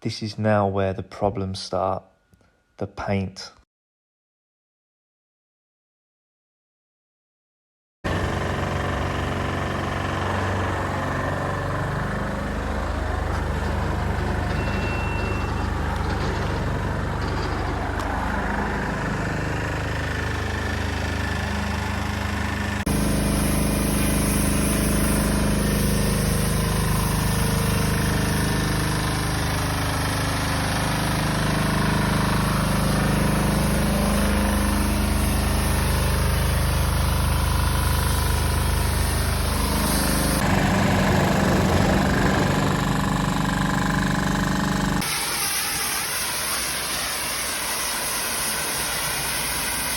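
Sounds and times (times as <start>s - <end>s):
engine running: 8.1s - 49.9s.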